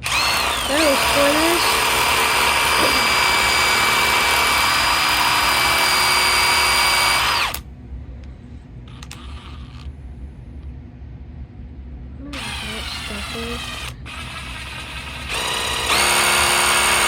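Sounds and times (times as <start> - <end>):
power drill whining: 0.0 - 7.6, 12.4 - 17.0.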